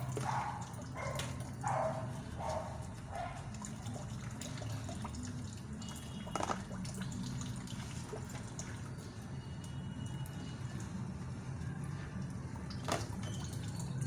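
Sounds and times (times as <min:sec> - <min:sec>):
tap water running into sink: 0:03.5 - 0:09.0.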